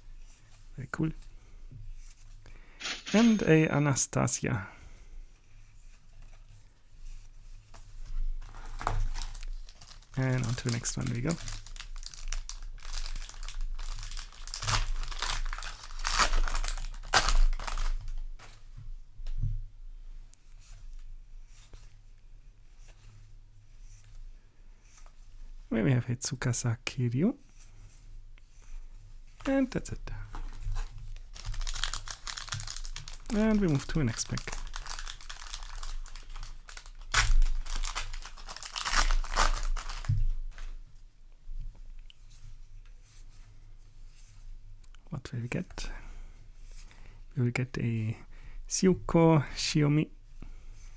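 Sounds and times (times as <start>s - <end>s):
wrapper tearing and crinkling: 8.5s - 18.2s, 30.7s - 40.2s.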